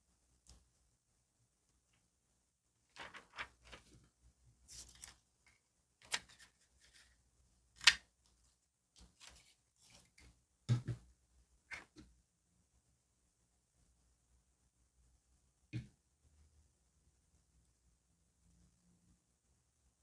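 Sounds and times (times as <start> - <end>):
paper rustling and crinkling: 2.9 - 4.1, 4.7 - 5.2.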